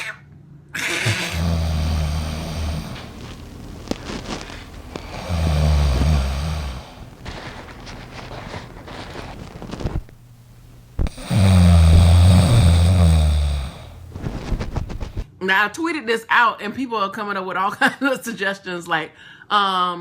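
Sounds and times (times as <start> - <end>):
loud snoring: 1.0 - 3.4, 4.4 - 7.4, 11.0 - 15.2.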